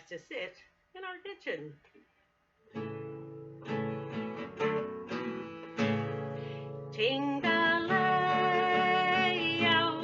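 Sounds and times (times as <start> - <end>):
acoustic guitar strumming: 2.7 - 10.0.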